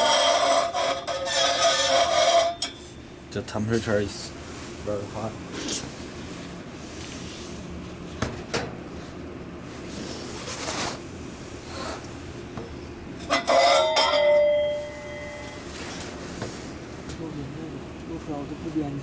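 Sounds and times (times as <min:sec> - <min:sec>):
glassy ringing: 0:13.2 - 0:15.6.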